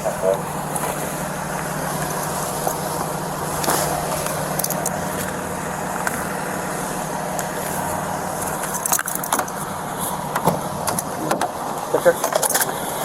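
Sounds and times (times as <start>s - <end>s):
engine humming: 0.0s - 13.0s
road noise: 0.0s - 13.0s
sharp clicks and knocks: 10.3s - 12.8s.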